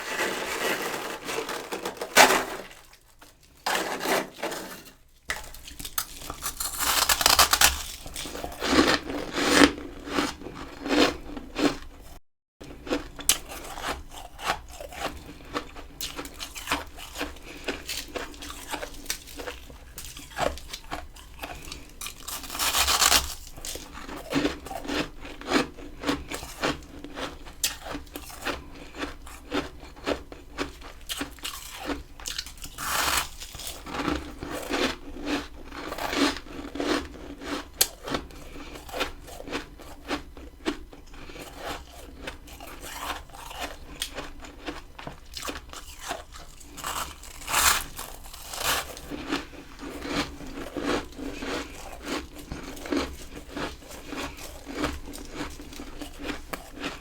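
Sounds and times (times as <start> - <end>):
frost scraping and crunching: 0.0 - 11.9, 12.7 - 29.7, 31.2 - 57.0.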